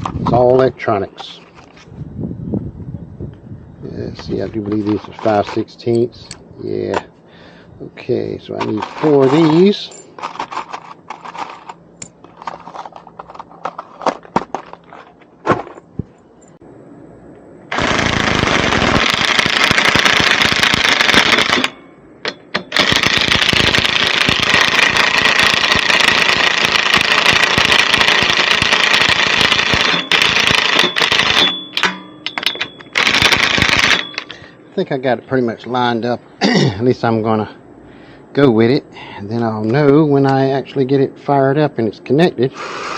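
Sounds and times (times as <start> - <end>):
hardware clicking and clattering: 8.6 - 15.8, 19.0 - 34.4
power driver hammering screws: 17.7 - 21.7, 22.5 - 34.4.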